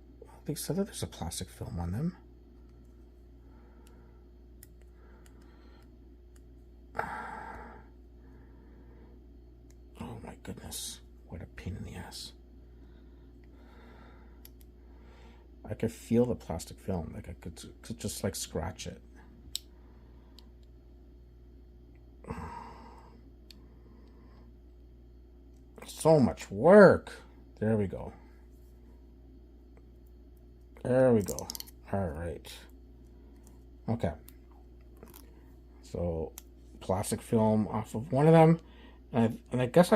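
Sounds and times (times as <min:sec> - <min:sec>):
breathy sigh: 0:06.9 - 0:08.0, 0:22.2 - 0:23.2.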